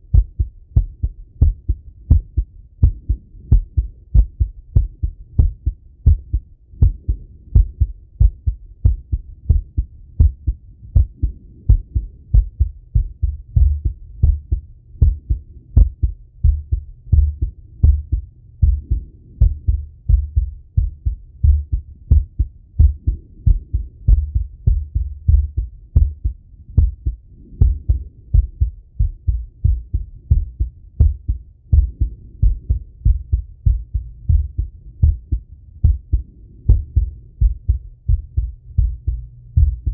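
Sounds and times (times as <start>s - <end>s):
heartbeat through stethoscope: 0.0s - 39.9s.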